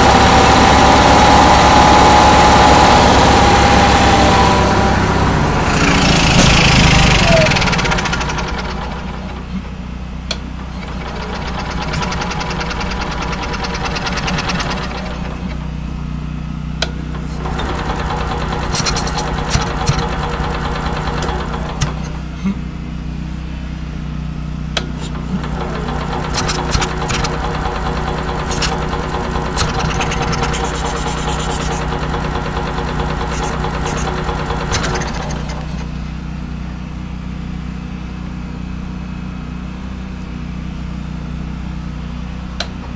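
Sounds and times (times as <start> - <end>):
small generator engine running: 0.0 - 42.9
sharp clicks and ticks: 5.8 - 9.6, 10.7 - 15.6, 17.3 - 22.2, 25.0 - 35.9.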